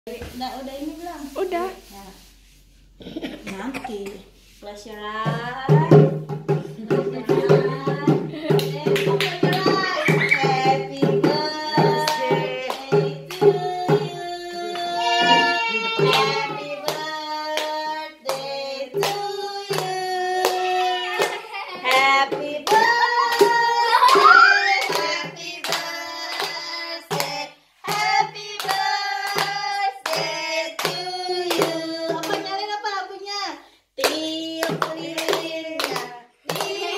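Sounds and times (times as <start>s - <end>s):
people singing a birthday song: 4.2s - 36.9s
steady handclaps: 7.5s - 14.1s, 16.0s - 32.6s, 34.0s - 36.9s.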